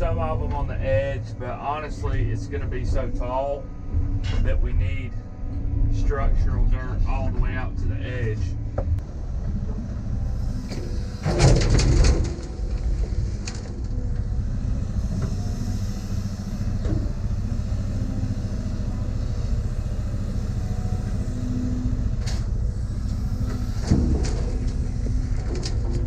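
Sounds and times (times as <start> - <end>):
diesel engine running: 0.0 - 26.0.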